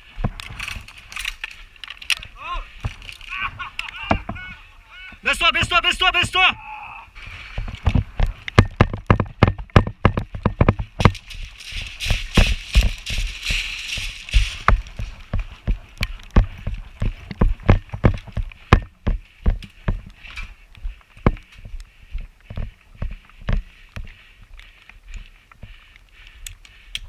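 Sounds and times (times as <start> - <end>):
footsteps with gear rattling: 0.0 - 6.2, 7.2 - 27.0.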